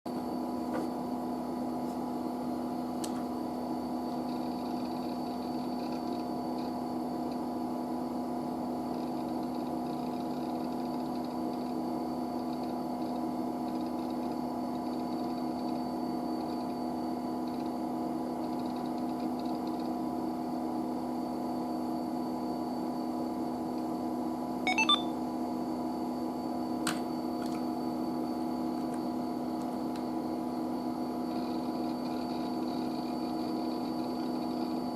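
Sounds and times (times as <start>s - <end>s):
steady machine hum: 0.1s - 8.9s
faint high chirping: 24.7s - 25.1s.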